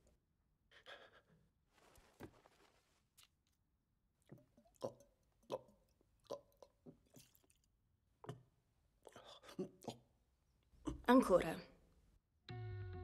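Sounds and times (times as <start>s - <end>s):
person gulping a drink: 4.2s - 10.0s.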